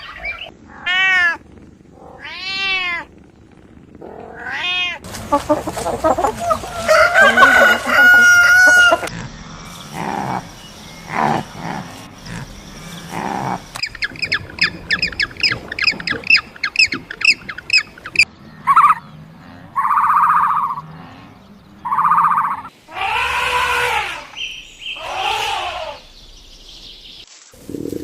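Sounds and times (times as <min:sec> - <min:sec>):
low animal calls: 0:04.0 - 0:26.3
loud buzzy calls: 0:04.4 - 0:26.2
bird chirping rapidly: 0:12.8 - 0:19.1, 0:19.8 - 0:22.7.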